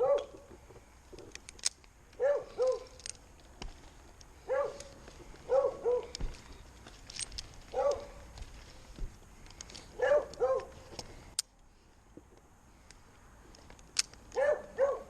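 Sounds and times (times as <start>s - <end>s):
dog barking: 0.0s - 0.4s, 2.2s - 2.9s, 4.5s - 4.9s, 5.5s - 6.1s, 7.7s - 8.2s, 10.0s - 10.7s, 14.4s - 15.0s.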